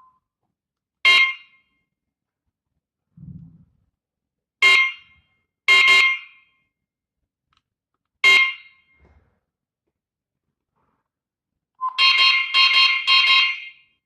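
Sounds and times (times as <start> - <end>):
alarm siren electronic chirps: 11.8 - 14.0.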